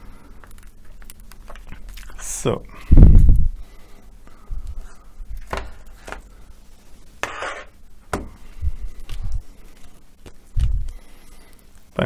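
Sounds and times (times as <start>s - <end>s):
short scrape: 7.2s - 7.8s.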